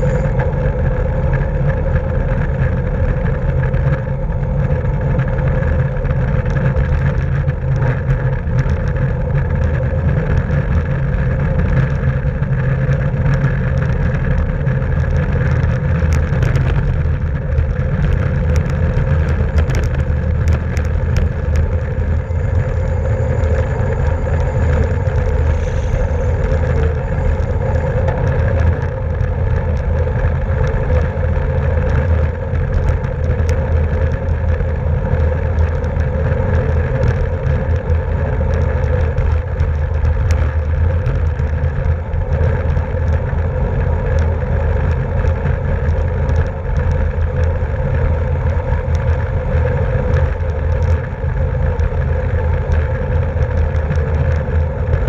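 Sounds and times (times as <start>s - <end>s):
bicycle tyre road noise: 0.0s - 55.0s
wind rush on microphone: 0.0s - 55.0s.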